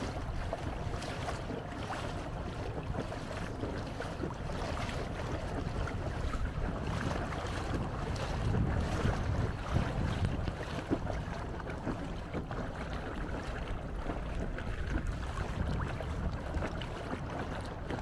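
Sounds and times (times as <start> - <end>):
water washing: 0.0 - 18.0
wind on microphone: 0.0 - 18.0.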